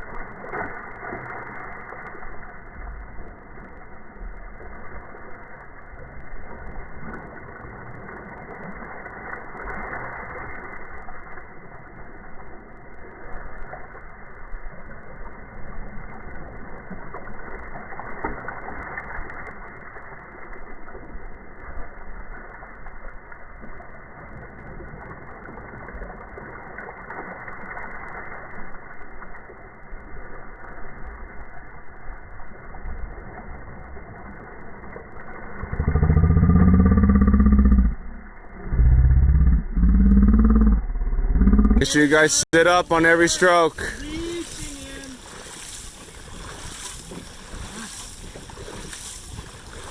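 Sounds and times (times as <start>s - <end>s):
motorboat engine: 34.0s - 49.9s.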